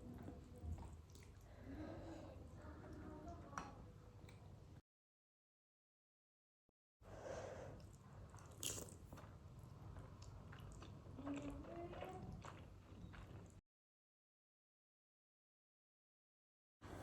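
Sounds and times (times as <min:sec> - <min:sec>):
chewing and biting food: 0:12.3 - 0:13.6.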